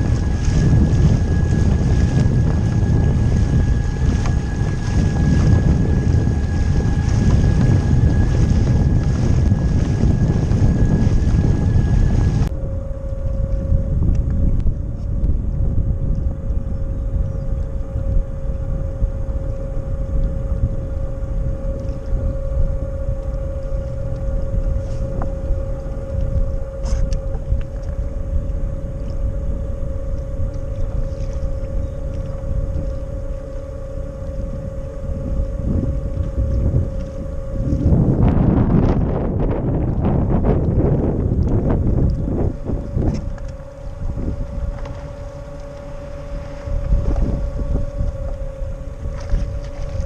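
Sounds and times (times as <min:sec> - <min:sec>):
electric motor whining: 0:00.0 - 0:50.0
wind buffeting microphone: 0:00.0 - 0:50.0.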